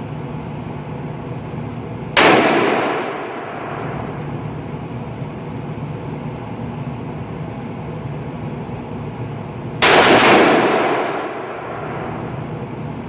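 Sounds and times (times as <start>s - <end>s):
steady background noise: 0.0s - 13.0s
rifle shot: 2.2s - 4.2s, 9.8s - 12.3s.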